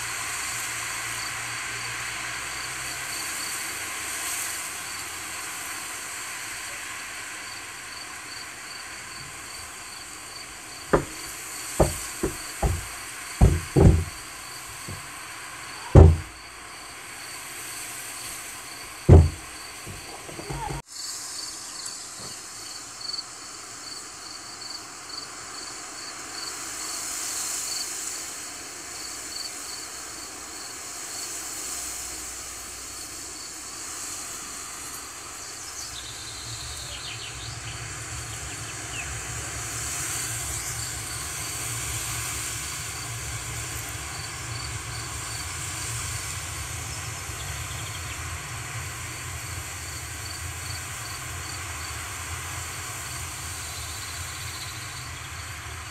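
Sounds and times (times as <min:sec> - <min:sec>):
insect chirping: 0:07.5 - 0:15.0.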